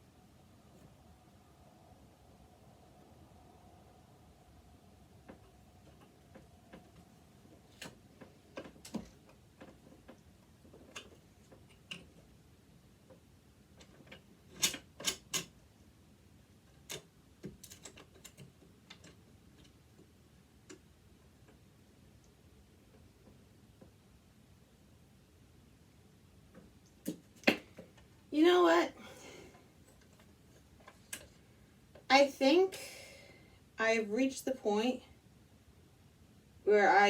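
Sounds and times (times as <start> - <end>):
tools clicking on metal parts: 13.8 - 15.5, 16.7 - 19.8.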